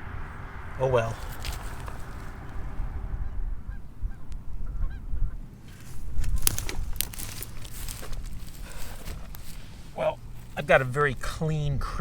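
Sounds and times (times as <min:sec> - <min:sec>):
geese honking faintly: 0:00.0 - 0:06.6
low rumble: 0:00.0 - 0:10.6.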